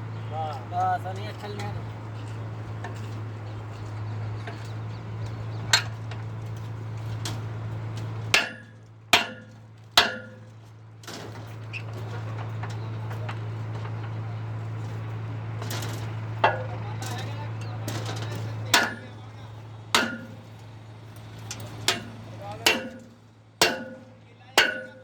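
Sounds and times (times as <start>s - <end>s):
concrete pump humming: 0.0s - 25.0s
sharp metallic knocks: 8.3s - 10.5s, 16.4s - 16.8s, 18.0s - 19.1s, 19.9s - 20.5s, 21.8s - 25.0s.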